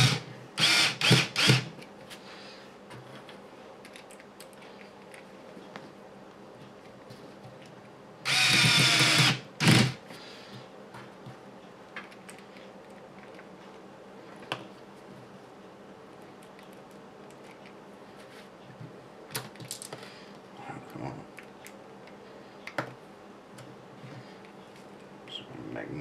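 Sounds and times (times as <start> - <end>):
small parts clicking and tapping: 3.8 - 5.3, 19.3 - 20.0.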